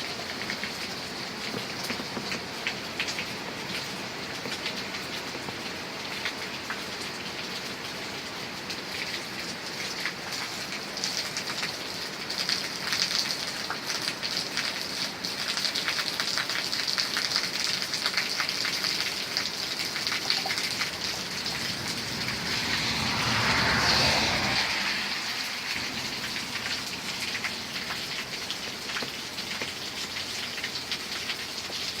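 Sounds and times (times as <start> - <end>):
heavy rain pouring: 0.0 - 32.0
rushing swell: 20.6 - 27.8.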